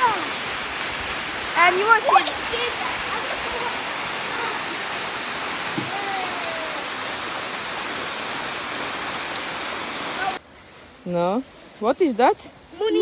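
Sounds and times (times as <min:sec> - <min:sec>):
waterfall pouring: 0:00.0 - 0:10.4.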